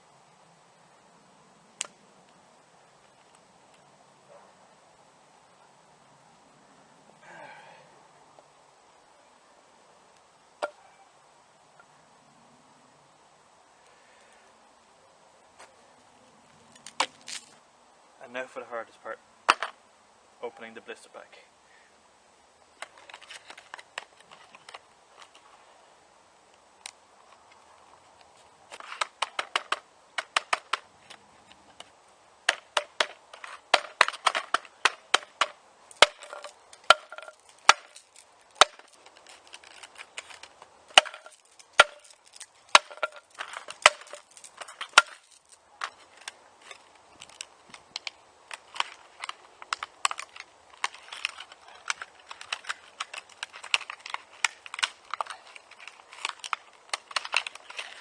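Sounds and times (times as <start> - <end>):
plastic blister pack cracking: 47.2 - 58.0.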